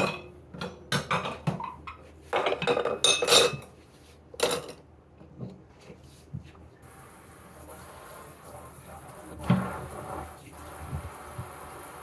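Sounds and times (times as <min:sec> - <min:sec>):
dishes and cutlery clattering: 0:00.0 - 0:03.8, 0:04.4 - 0:04.9.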